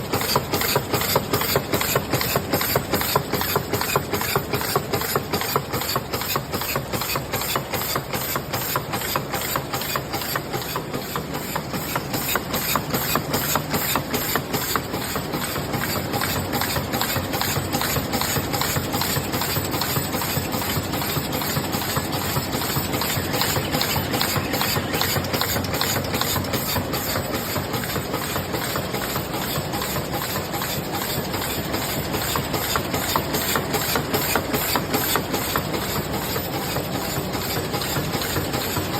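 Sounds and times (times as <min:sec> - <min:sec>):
machine clattering: 0:00.0 - 0:38.9
machine hiss: 0:07.4 - 0:38.8.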